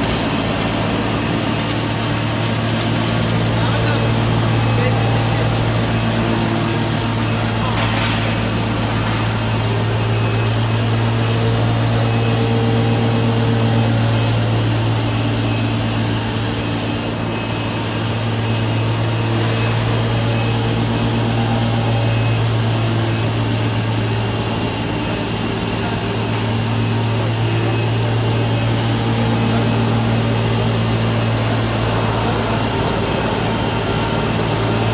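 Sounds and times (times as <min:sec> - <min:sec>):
machine humming and whining: 0:00.0 - 0:34.9.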